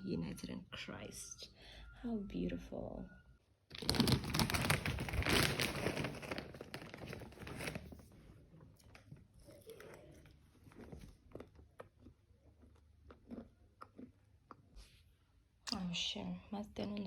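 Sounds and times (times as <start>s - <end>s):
rustling and crinkling: 3.7s - 11.8s.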